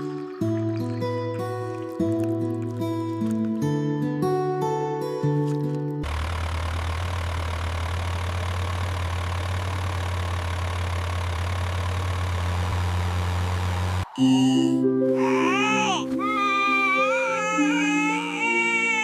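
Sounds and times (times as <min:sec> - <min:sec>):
vehicle engine running steadily: 0:06.0 - 0:14.1.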